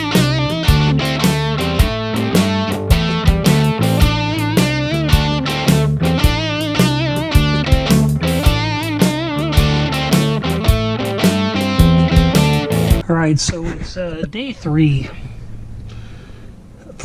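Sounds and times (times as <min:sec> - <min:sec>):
bass: 0:00.0 - 0:13.0
distorted electric guitar: 0:00.0 - 0:13.0
steady drum beat: 0:00.0 - 0:13.0.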